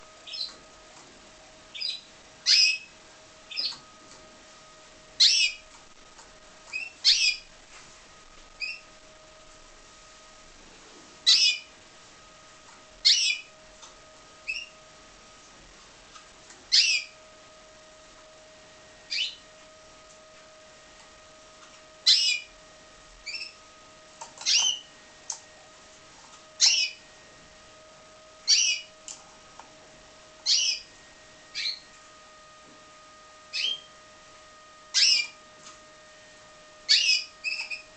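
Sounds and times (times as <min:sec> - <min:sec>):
faint steady hum: 0:00.0 - 0:37.9
canary chirping: 0:00.2 - 0:00.6, 0:01.7 - 0:03.8, 0:05.2 - 0:05.8, 0:06.6 - 0:07.5, 0:08.6 - 0:09.0, 0:11.2 - 0:11.8, 0:13.0 - 0:13.6, 0:14.4 - 0:14.8, 0:16.7 - 0:17.2, 0:19.1 - 0:19.5, 0:22.0 - 0:22.6, 0:23.2 - 0:23.6, 0:24.4 - 0:24.9, 0:26.6 - 0:27.0, 0:28.4 - 0:29.0, 0:30.4 - 0:30.9, 0:31.5 - 0:31.9, 0:33.5 - 0:33.9, 0:34.9 - 0:35.4, 0:36.8 - 0:37.9.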